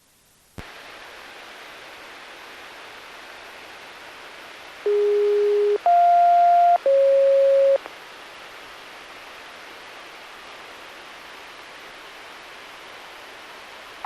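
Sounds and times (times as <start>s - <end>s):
radio hiss: 0.6s - 7.9s
electronic tones: 4.9s - 7.8s.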